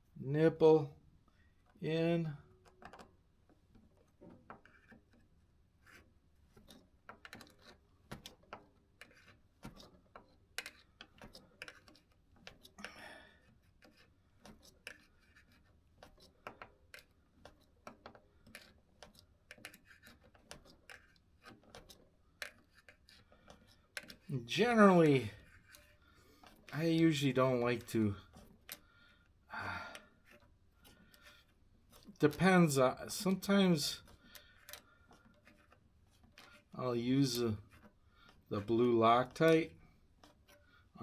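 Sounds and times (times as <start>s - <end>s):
small metallic clicks and taps: 5.9s - 24.3s, 34.0s - 38.6s.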